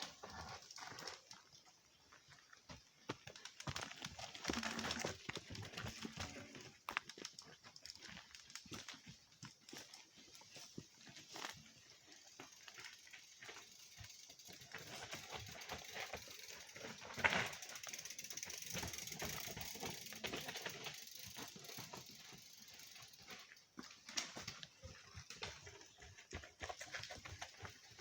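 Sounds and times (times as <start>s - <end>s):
bicycle freewheel ticking: 3.4s - 9.0s, 11.7s - 23.6s.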